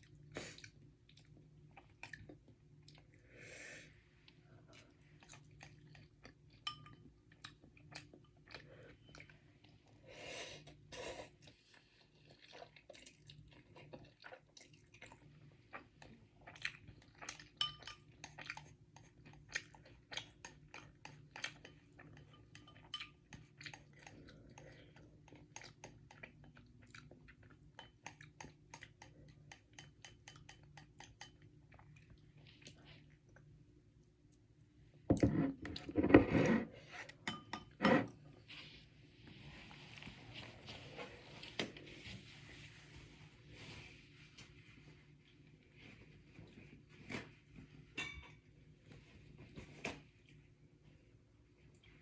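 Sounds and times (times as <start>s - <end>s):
chewing noodles: 4.7s - 6.6s, 10.6s - 33.4s
cutlery clinking against dish: 48.0s - 48.4s.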